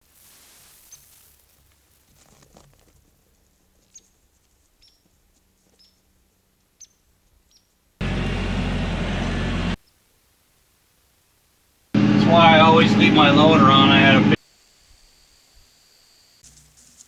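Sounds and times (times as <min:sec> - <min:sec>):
bird chirps: 0:04.8 - 0:05.1, 0:05.8 - 0:06.0, 0:06.8 - 0:07.8
loud steady noise with low hum: 0:08.0 - 0:09.8, 0:12.0 - 0:16.4.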